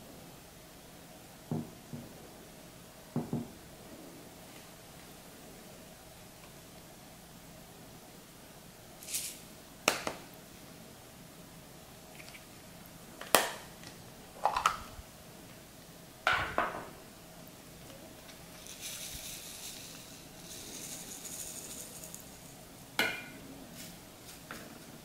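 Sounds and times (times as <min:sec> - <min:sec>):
soft high rustling hiss: 0:00.0 - 0:25.0
containers and utensils clinking: 0:18.5 - 0:23.3.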